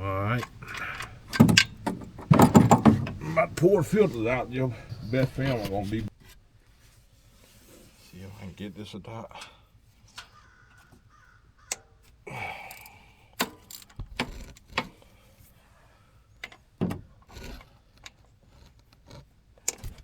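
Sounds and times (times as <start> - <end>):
metal tools clinking: 0.3 - 6.1.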